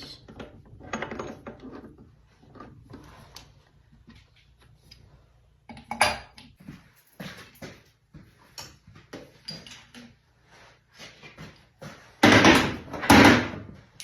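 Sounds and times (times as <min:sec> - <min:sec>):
metal clinking and knocking: 0:00.3 - 0:02.7.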